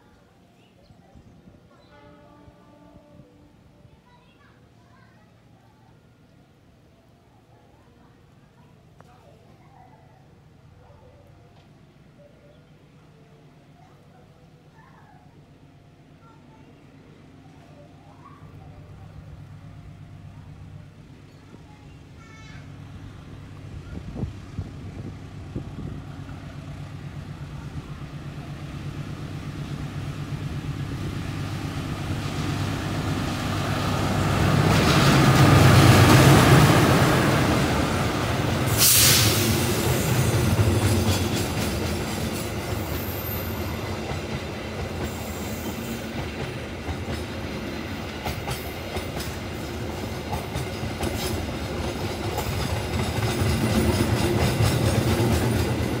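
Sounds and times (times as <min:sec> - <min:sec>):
train passing: 0:00.0 - 0:56.0
train hiss: 0:22.7 - 0:56.0
wheels clicking over rail joints: 0:40.6 - 0:56.0.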